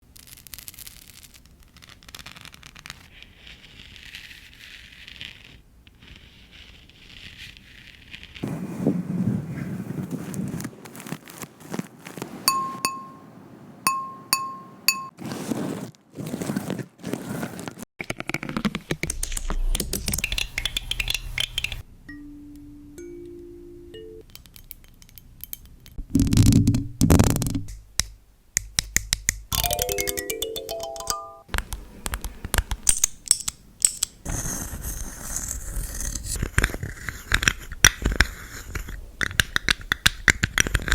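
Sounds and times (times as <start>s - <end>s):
crackly scratching: 0.0s - 12.5s, 15.2s - 21.8s, 34.1s - 40.9s
ringing glass clinks: 12.5s - 13.3s, 13.9s - 15.1s
sharp taps and clicks: 18.1s - 21.8s, 27.5s - 34.0s.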